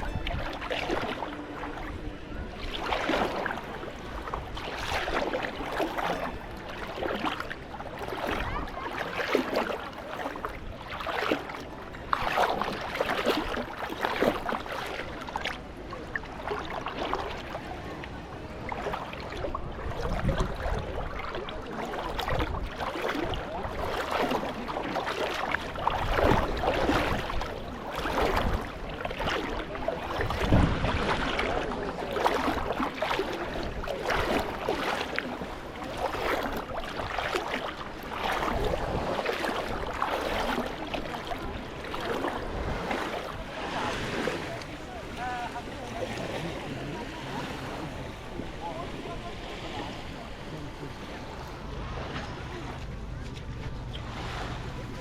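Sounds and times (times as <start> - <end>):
wind rumble on microphone: 0.0 - 14.8, 17.2 - 45.6
small waves lapping on shore: 0.0 - 55.0.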